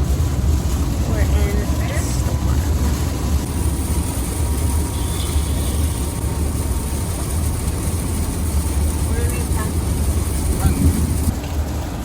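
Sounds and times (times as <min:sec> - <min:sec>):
car driving low rumble: 0:00.0 - 0:12.0
heavy rain and tyre spray hiss: 0:00.0 - 0:12.0.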